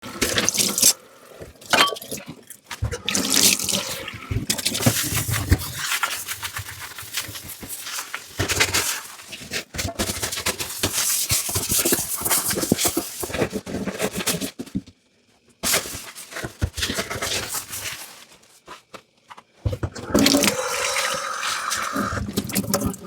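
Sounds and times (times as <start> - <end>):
dishes and utensils clattering: 1.7 - 3.0.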